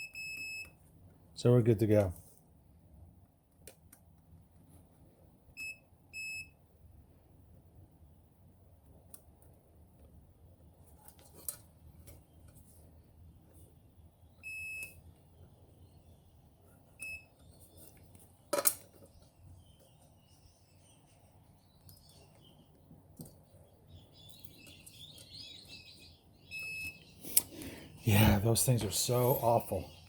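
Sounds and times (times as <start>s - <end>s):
multimeter beeping: 0.0s - 0.8s, 5.5s - 6.6s, 14.4s - 15.0s, 17.0s - 17.4s, 26.4s - 27.1s.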